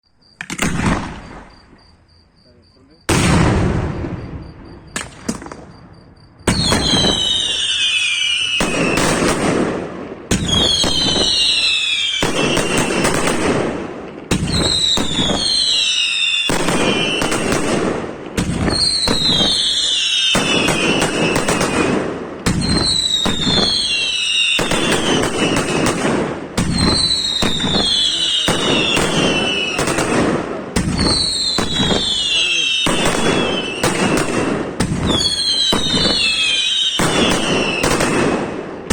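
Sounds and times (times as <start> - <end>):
firework bangs: 0.4 - 1.9, 3.0 - 38.9
firework whistles falling in pitch: 4.0 - 9.4, 10.3 - 13.5, 14.3 - 17.8, 18.4 - 26.0, 26.6 - 30.2, 30.8 - 38.3
firework crackling: 6.5 - 38.9.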